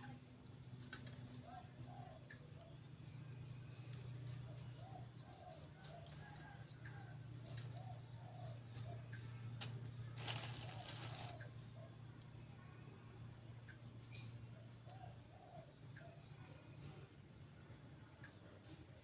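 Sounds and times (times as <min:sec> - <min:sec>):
birds calling: 0:01.3 - 0:09.6, 0:10.2 - 0:12.0.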